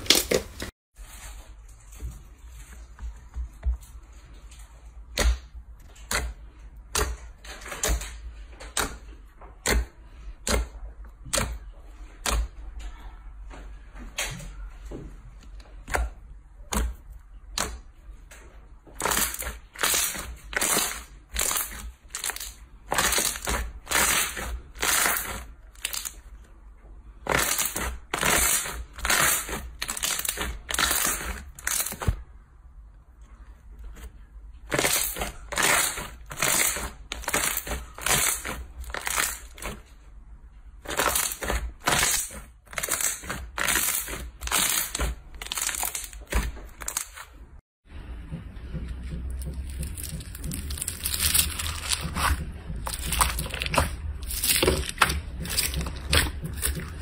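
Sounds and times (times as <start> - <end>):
slime crackling and popping: 19.0 - 26.3, 27.2 - 32.2, 34.7 - 39.8, 40.8 - 47.2, 49.5 - 57.0.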